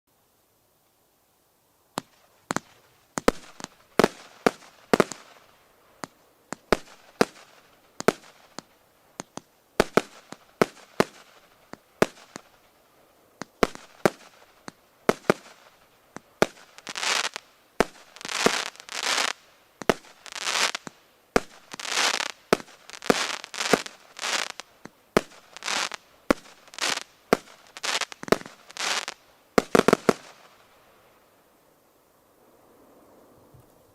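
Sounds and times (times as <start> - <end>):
hissing firework shots: 2.0 - 31.4.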